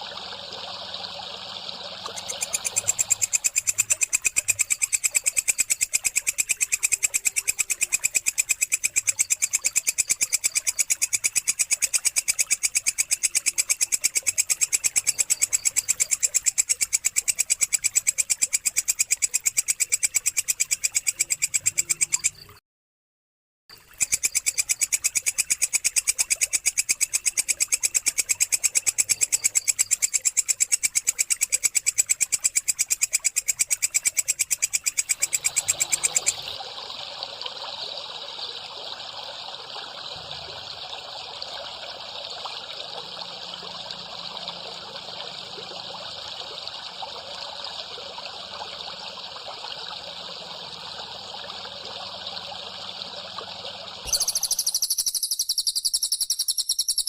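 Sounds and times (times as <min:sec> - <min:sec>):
high buzzing bird trill: 0:54.0 - 0:57.0
songbird chirps: 0:54.0 - 0:57.0.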